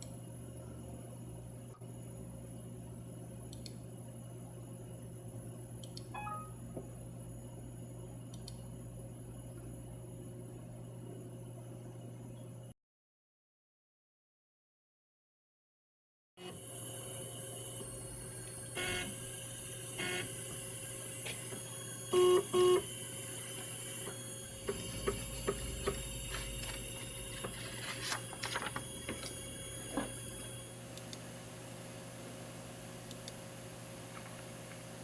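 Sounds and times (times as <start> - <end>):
engraving machine hum: 16.5 - 35.0
pitched whirs of moving axes: 20.0 - 31.1.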